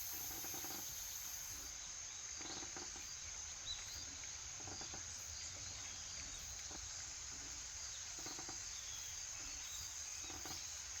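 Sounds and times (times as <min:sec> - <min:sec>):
crickets chirring: 0:00.0 - 0:01.7.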